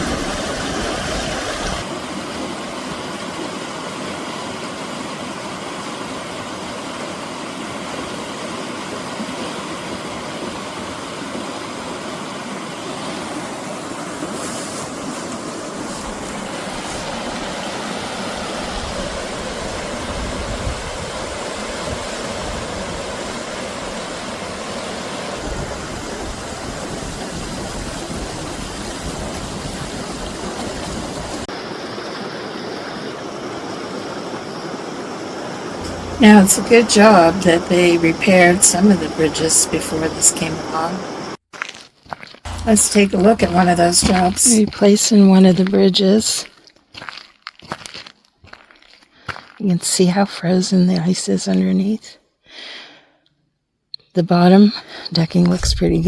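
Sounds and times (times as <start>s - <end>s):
creek water rushing: 0.0s - 41.4s, 42.5s - 45.6s.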